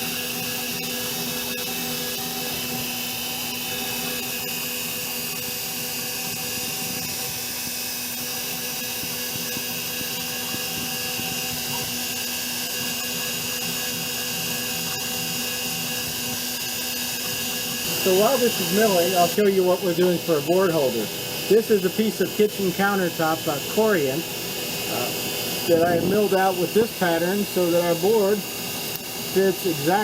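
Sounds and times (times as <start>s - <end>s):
milling machine whine: 0.0s - 30.0s
high hiss of bit cutting metal: 17.6s - 30.0s.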